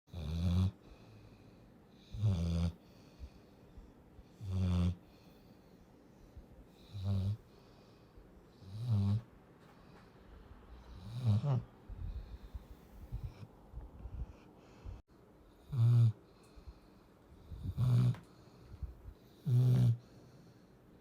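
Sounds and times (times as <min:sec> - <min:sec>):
puppy snoring: 0:00.1 - 0:01.2, 0:02.0 - 0:03.4, 0:04.2 - 0:05.4, 0:06.7 - 0:07.7, 0:08.5 - 0:09.3, 0:10.8 - 0:13.5, 0:15.6 - 0:16.8, 0:17.4 - 0:20.2.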